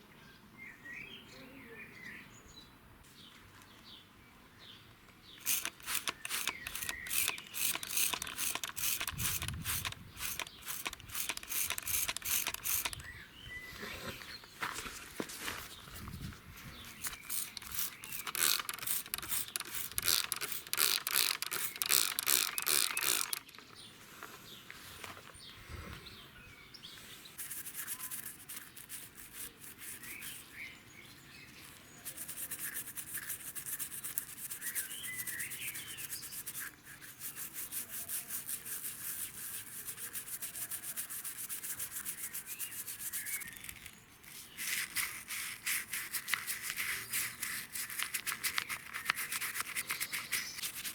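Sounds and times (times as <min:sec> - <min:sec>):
birds chirping faintly: 0:00.0 - 0:50.9
rubbing strokes on a cup: 0:05.4 - 0:13.0, 0:16.7 - 0:23.4, 0:27.0 - 0:30.6, 0:31.6 - 0:50.9.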